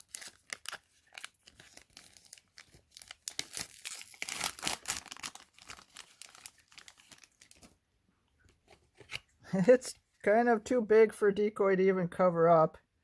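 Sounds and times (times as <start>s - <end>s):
plastic wrapper tearing and crinkling: 0.0s - 7.8s.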